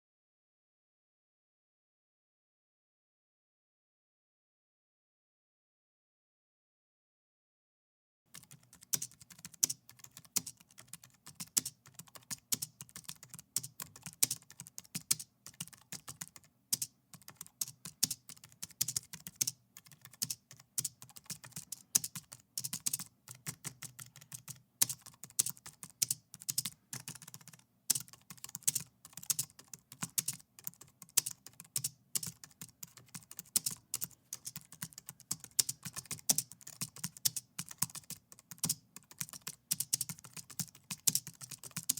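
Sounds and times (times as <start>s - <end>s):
keyboard typing: 8.3s - 41.9s.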